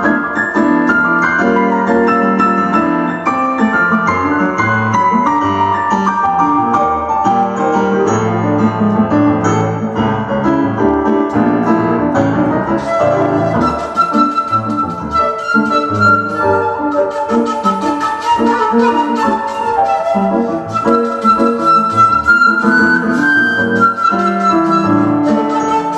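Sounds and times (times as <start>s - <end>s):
piano playing: 0.0s - 25.9s
shakuhachi holding long notes: 12.8s - 25.9s.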